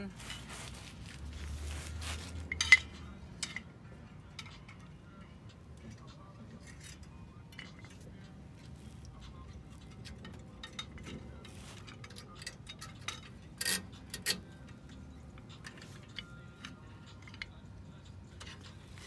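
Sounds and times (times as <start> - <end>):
small metal parts clinking: 0.2 - 3.7, 9.8 - 14.8.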